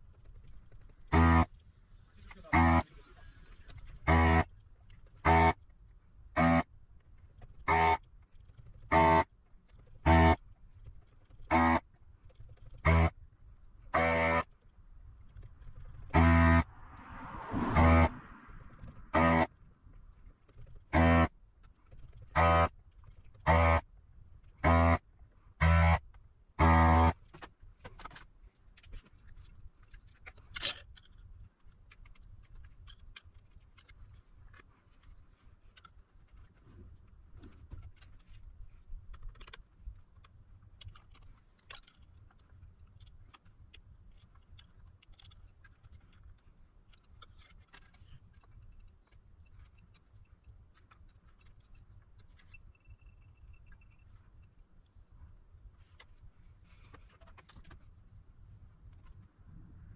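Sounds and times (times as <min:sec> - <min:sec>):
electronic buzzer beeps: 0:06.4 - 0:06.6
faint clicks and handling: 0:27.1 - 0:59.5.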